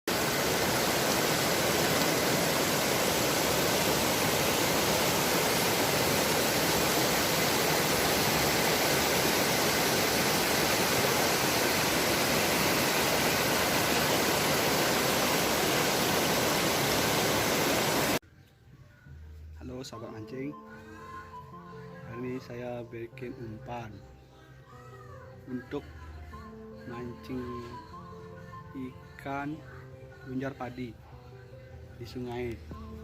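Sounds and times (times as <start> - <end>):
flowing river water: 0.1 - 18.2.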